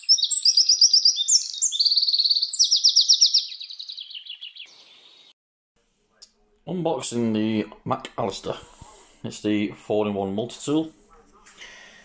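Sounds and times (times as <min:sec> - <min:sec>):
songbird trilling: 0:00.0 - 0:05.3.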